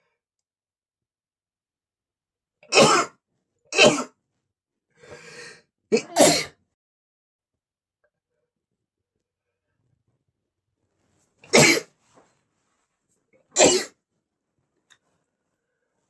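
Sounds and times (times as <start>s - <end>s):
man sneezing: 6.0s - 6.5s, 11.5s - 11.9s.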